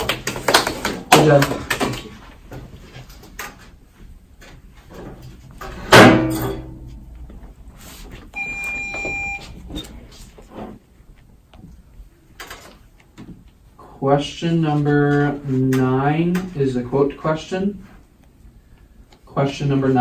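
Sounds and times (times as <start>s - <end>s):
electronic beep: 8.4s - 9.6s.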